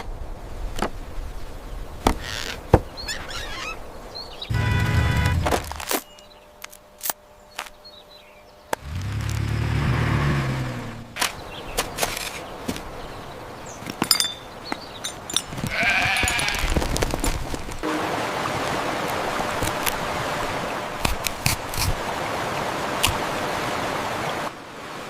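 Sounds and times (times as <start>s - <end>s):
sheep-like bleat: 15.7s - 16.8s.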